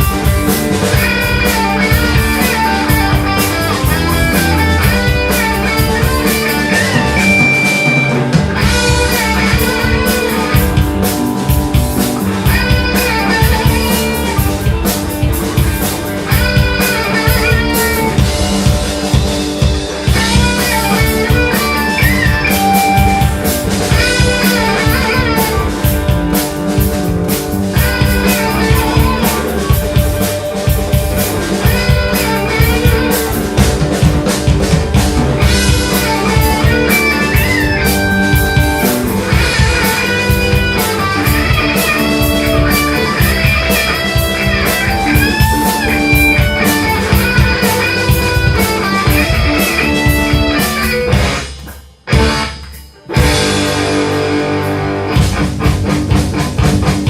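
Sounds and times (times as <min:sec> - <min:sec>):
drum kit beat: 0:00.0 - 0:57.0
electric guitar: 0:00.0 - 0:57.0.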